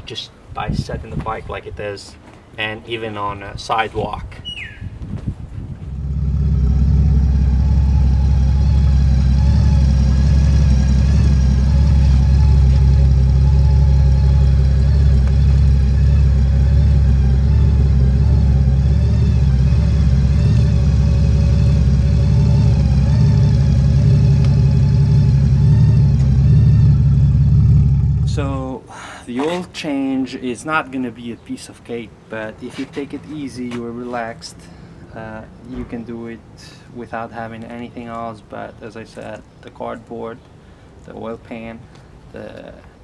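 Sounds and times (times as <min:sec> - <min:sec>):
motorcycle engine idling: 0:05.9 - 0:28.6.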